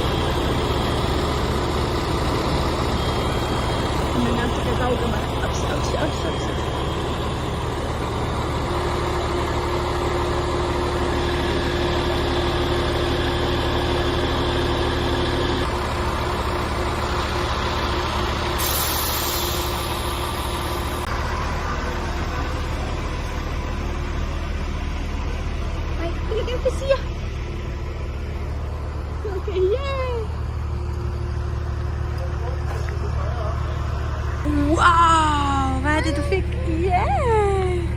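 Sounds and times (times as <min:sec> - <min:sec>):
heavy vehicle engine idling: 0:00.0 - 0:37.9
short air hiss: 0:18.6 - 0:19.8.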